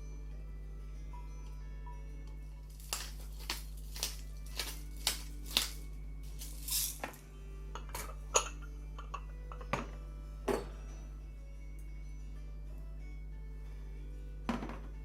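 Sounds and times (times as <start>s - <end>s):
soft background music: 0.0s - 15.0s
tableware clinks and taps: 7.8s - 11.0s.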